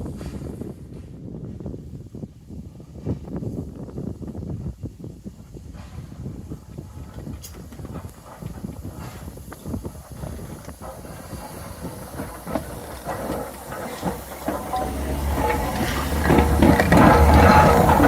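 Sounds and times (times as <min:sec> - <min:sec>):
steam locomotive hissing: 0:00.0 - 0:18.0
metallic clanks: 0:10.8 - 0:18.0.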